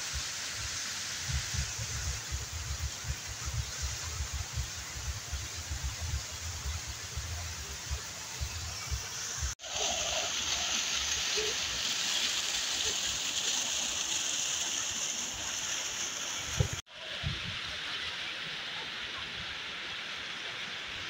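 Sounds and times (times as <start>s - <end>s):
waterfall rushing water: 0.0s - 21.0s
wind rumble on microphone: 1.2s - 9.1s, 16.5s - 17.8s.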